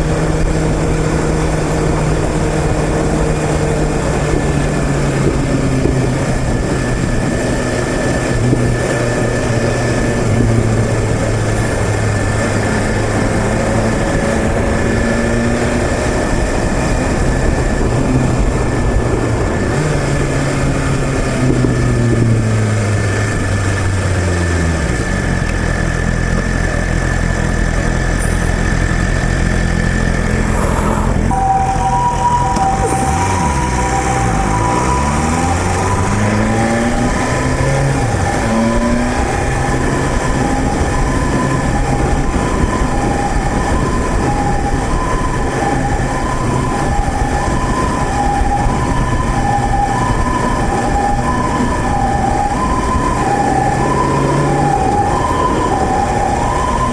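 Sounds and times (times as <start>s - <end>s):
motorcycle engine running: 0.0s - 33.1s
ambulance hi-lo siren: 0.0s - 56.9s
rushing noise: 0.0s - 56.9s.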